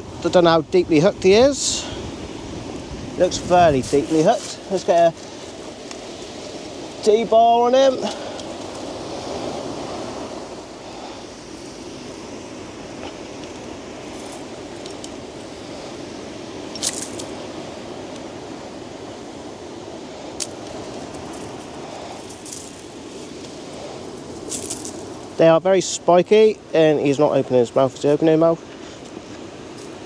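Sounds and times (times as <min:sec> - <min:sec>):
rustles and squishes: 0:03.3 - 0:07.1, 0:10.8 - 0:17.5, 0:20.3 - 0:25.4, 0:27.2 - 0:30.0.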